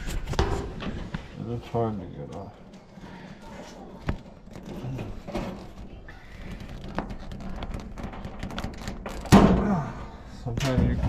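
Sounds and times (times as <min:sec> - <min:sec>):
sheet metal clicks and knocks: 0:04.1 - 0:09.5.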